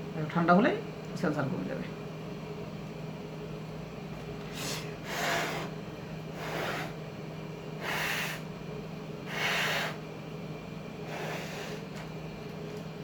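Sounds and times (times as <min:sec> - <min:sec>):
steady low hum: 0:00.0 - 0:13.0
person breathing in puffs: 0:04.4 - 0:05.7, 0:06.3 - 0:07.0, 0:07.8 - 0:08.5, 0:09.3 - 0:10.0, 0:11.0 - 0:11.9.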